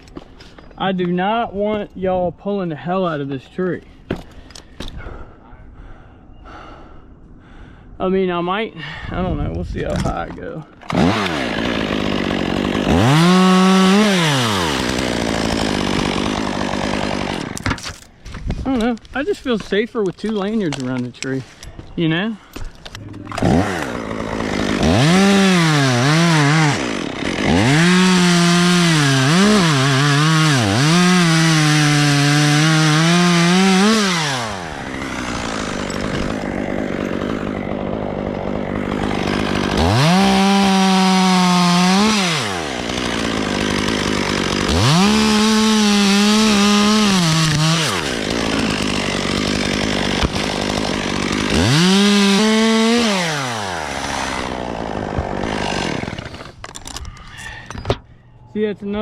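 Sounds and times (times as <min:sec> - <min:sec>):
chainsaw cutting wood: 0:10.0 - 0:19.0, 0:22.6 - 0:57.6.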